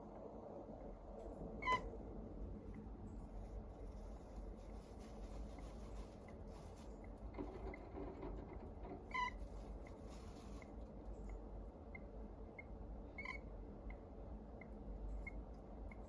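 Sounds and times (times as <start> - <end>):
hamster squeak: 1.6 - 1.9, 7.3 - 10.7, 11.9 - 13.5.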